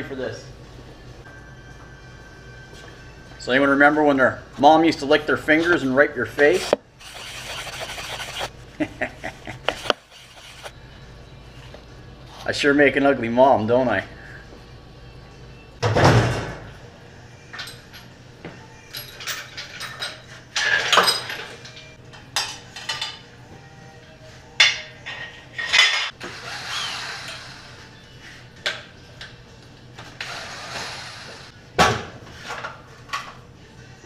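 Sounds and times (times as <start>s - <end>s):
rattling scrapes: 6.5s - 8.5s
metal tools clinking and scraping: 18.9s - 23.2s, 24.6s - 26.2s.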